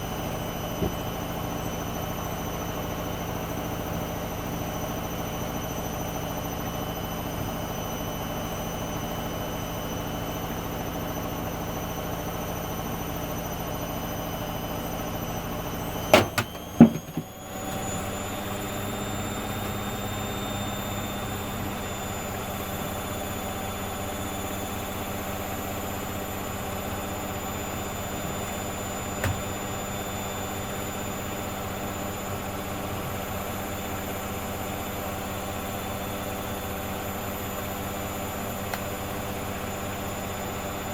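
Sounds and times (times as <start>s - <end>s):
washing machine humming: 0.0s - 5.1s, 14.1s - 20.3s, 21.2s - 40.9s
washing machine clicks: 16.1s - 17.3s, 29.2s - 29.6s.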